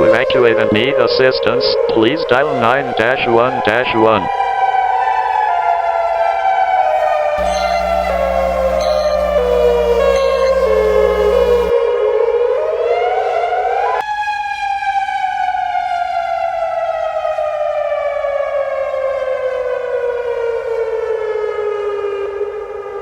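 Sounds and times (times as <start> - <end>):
siren wailing: 7.4 - 12.9.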